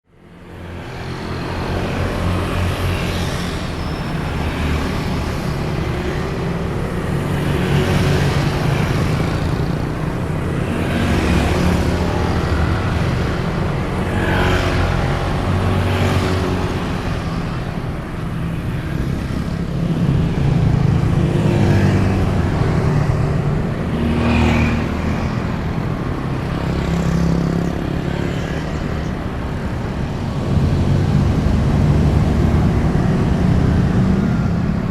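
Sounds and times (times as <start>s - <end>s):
vehicles passing by: 0.1s - 34.9s
motorcycles passing: 0.2s - 34.9s.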